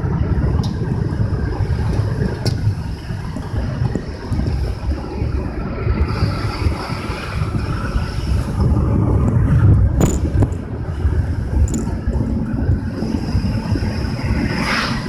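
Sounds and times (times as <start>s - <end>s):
low rumbling noise: 0.0s - 15.0s
sharp click: 10.0s - 10.6s.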